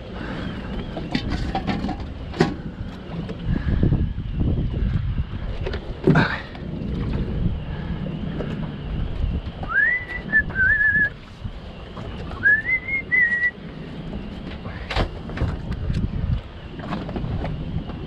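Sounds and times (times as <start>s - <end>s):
steady low rumble: 0.0s - 18.0s
rising short whistles: 9.6s - 11.2s, 12.3s - 13.6s.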